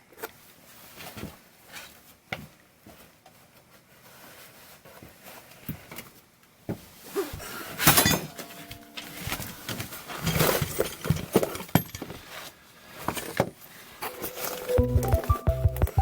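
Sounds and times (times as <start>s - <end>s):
metal parts and tools clinking: 7.9s - 12.2s.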